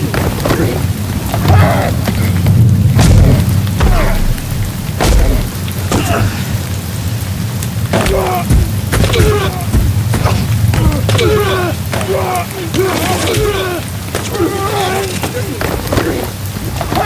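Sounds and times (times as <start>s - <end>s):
players grunting and shouting: 0.0s - 6.9s, 7.8s - 17.0s
rain: 0.0s - 17.0s
low rumble: 1.0s - 12.8s.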